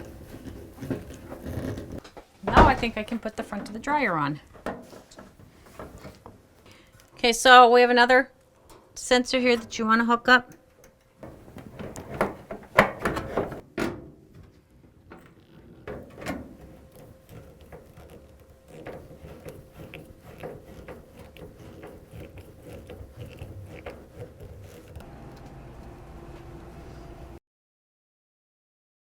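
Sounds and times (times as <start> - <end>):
clicking and rattling: 10.8 - 13.6.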